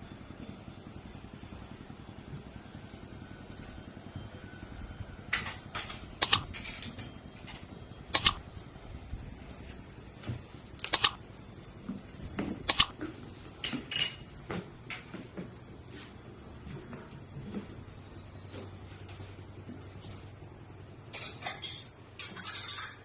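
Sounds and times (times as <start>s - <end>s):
dishes and cutlery clinking: 21.1s - 23.0s.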